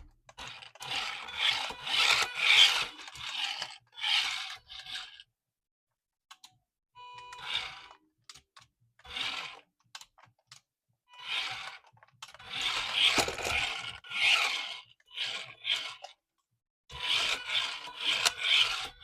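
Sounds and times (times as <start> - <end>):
plastic crinkling and scraping: 11.9 - 14.5.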